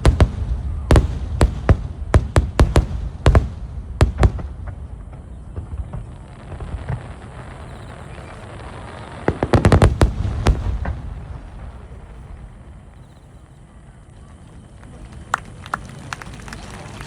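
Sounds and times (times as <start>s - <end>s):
low rumbling: 0.0s - 6.2s
fireworks bangs: 0.0s - 17.0s.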